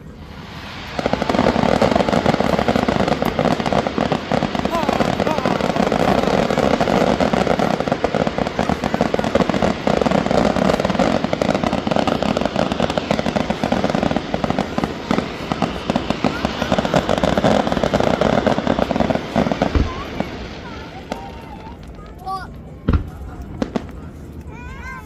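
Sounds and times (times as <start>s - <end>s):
fireworks crackling and popping: 0.0s - 25.0s.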